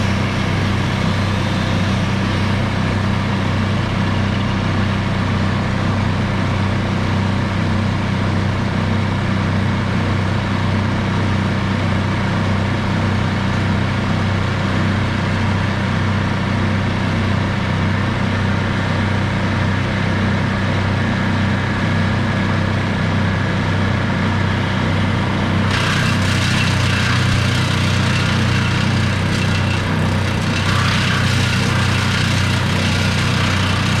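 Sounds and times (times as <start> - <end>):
motor engine running: 0.0 - 7.5, 20.4 - 34.0.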